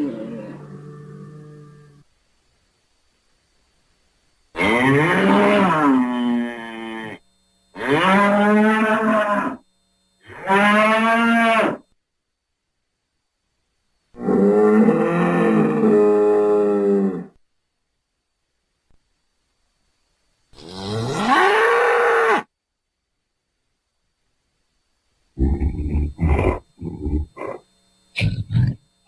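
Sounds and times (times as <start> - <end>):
bull mooing: 0.0 - 2.0, 4.6 - 7.2, 7.8 - 9.6, 10.3 - 11.8, 14.2 - 17.4, 20.6 - 22.5, 25.4 - 27.6.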